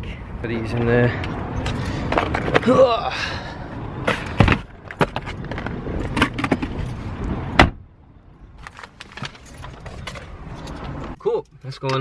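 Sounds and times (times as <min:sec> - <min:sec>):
car door shutting: 0:07.6 - 0:07.8.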